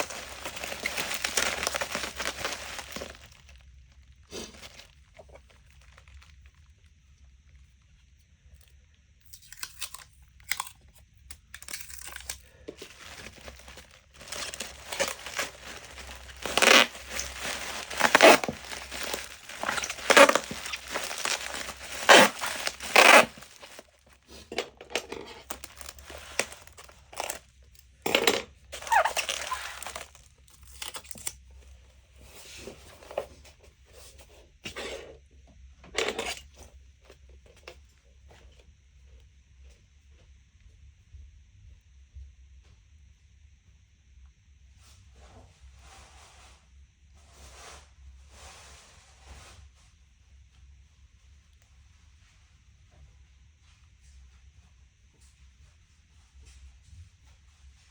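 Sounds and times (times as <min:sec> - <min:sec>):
tearing and crinkling: 0:00.0 - 0:06.7, 0:11.5 - 0:24.5, 0:25.2 - 0:27.5, 0:28.8 - 0:31.4.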